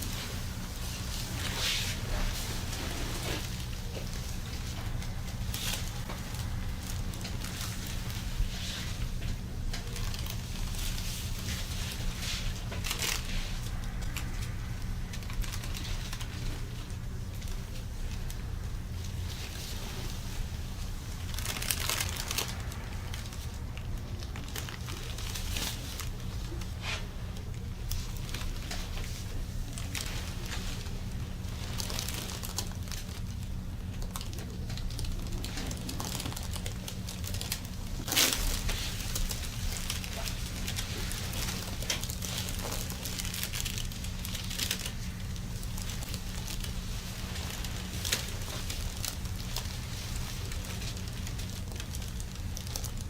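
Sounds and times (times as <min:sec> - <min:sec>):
crinkling and rustling: 0:00.0 - 0:53.0
steady low hum: 0:00.0 - 0:53.0.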